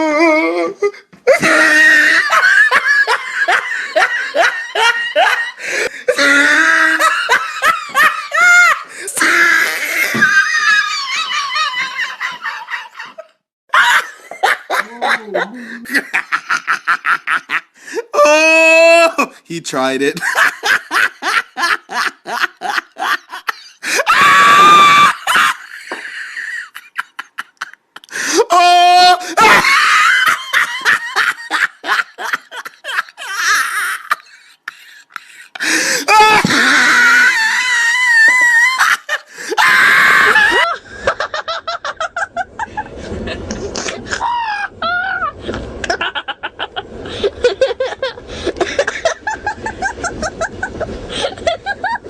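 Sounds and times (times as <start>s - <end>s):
person laughing: 1.3s - 17.6s, 38.1s - 52.0s
breathless gasps: 28.1s - 28.4s, 34.8s - 36.1s.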